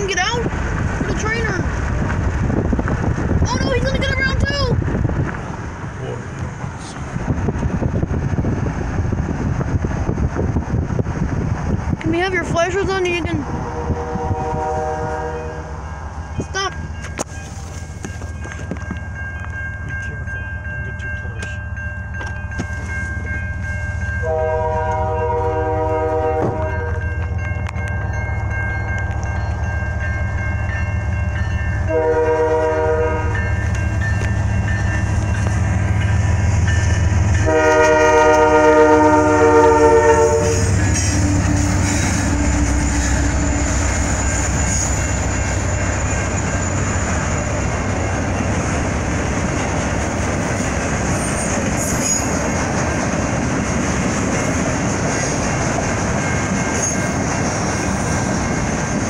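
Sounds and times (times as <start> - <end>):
rail cars rumbling and clacking: 0.0 - 59.0
train horn blasts: 13.5 - 16.0, 24.2 - 27.1, 31.8 - 33.6, 37.3 - 44.0.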